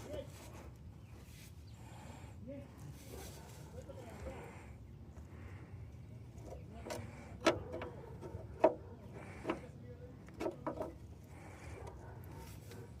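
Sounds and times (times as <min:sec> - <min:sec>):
tools being handled knocking: 0:06.4 - 0:09.7, 0:10.3 - 0:11.0.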